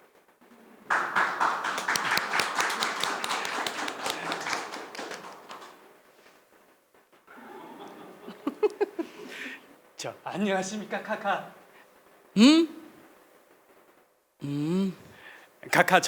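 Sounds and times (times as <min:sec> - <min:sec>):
small group clapping: 0:00.5 - 0:06.4.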